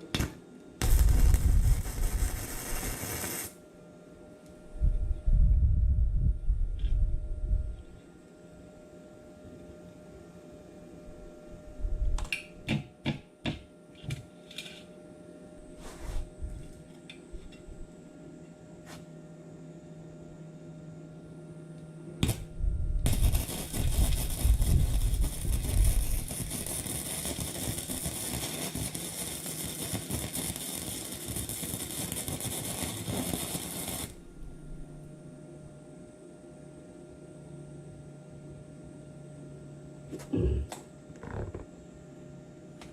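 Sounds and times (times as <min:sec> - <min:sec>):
welding arc crackling: 0:00.0 - 0:03.6, 0:22.2 - 0:34.2.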